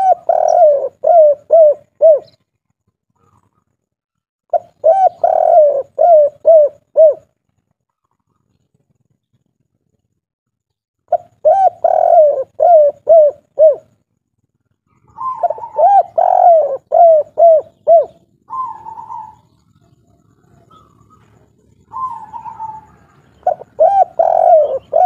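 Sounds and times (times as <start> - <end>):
dove cooing: 0.0 - 2.4, 4.5 - 7.4, 11.1 - 14.0, 14.9 - 25.0.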